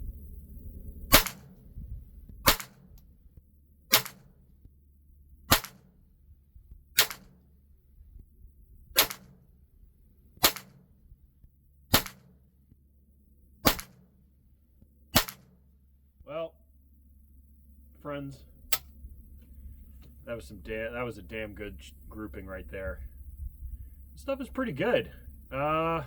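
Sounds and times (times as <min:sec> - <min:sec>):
gunshots: 0:01.1 - 0:01.6, 0:02.4 - 0:03.0, 0:03.9 - 0:04.4, 0:05.5 - 0:06.0, 0:07.0 - 0:07.4, 0:09.0 - 0:09.5, 0:10.4 - 0:10.9, 0:11.9 - 0:12.4, 0:13.6 - 0:14.1, 0:15.1 - 0:15.6.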